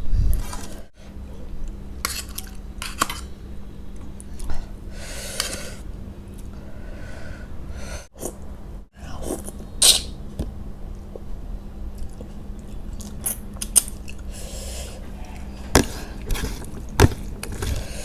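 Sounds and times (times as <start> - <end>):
faint steady hum: 0.0 - 18.0
mouth clicks: 9.8 - 10.2
person eating close up: 10.8 - 17.9
noisy breath or sniff: 14.3 - 16.6.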